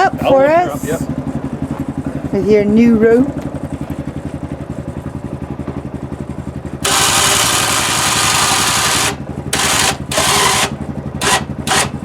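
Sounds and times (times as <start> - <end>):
engine idling: 0.0 - 12.0
electric winch running: 6.2 - 12.0.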